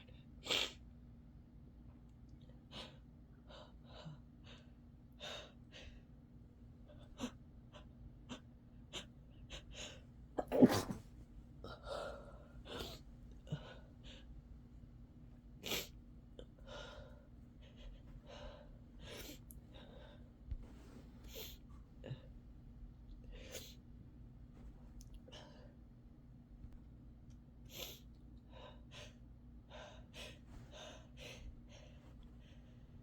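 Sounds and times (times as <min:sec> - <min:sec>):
person sneezing: 0:10.4 - 0:11.1.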